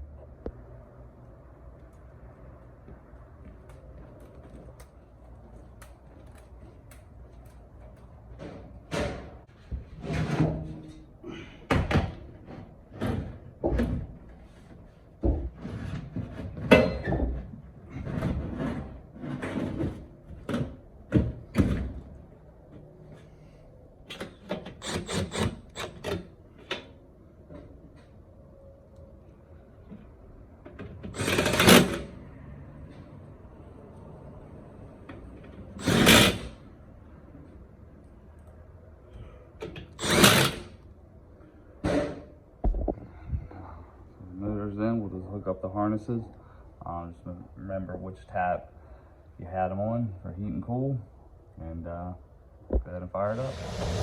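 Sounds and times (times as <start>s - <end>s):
sheet metal clunks and scraping: 8.4s - 11.1s
cordless power drill driving fasteners: 24.6s - 26.1s, 31.1s - 32.1s, 35.8s - 36.5s, 39.9s - 40.7s.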